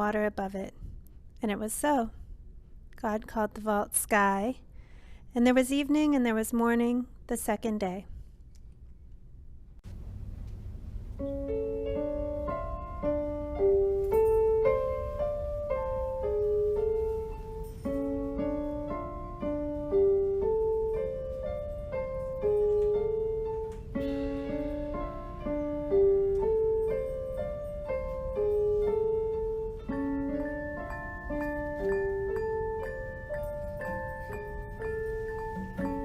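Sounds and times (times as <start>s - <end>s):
piano-like keyboard music: 11.0s - 36.0s.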